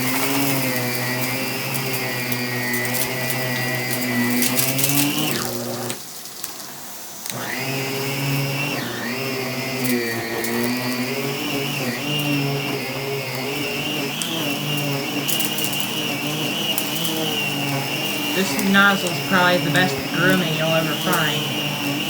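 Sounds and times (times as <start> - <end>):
vacuum motor whine: 0.0 - 6.2, 6.8 - 22.0
brush-roll hum: 10.0 - 22.0.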